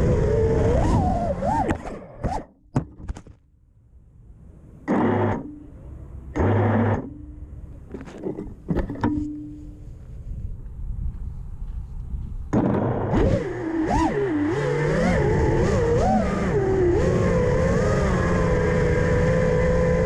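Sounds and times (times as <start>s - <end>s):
drone motors whining: 0.0s - 2.5s, 6.3s - 7.4s, 12.5s - 20.0s.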